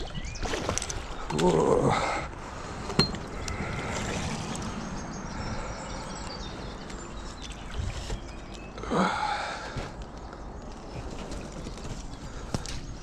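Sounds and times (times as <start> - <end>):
water sloshing and splashing: 0.0 - 5.1, 6.8 - 8.7.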